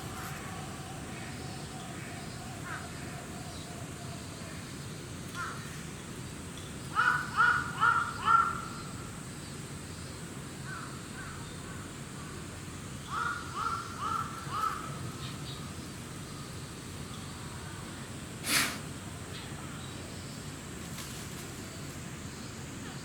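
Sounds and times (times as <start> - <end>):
crow cawing: 7.0 - 8.7, 13.1 - 14.9.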